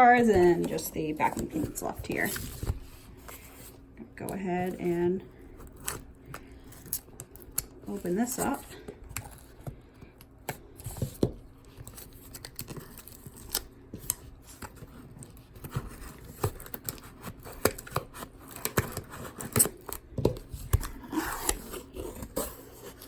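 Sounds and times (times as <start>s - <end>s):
cardboard scraping and rustling: 0.1s - 3.8s
tape tearing: 20.7s - 23.0s.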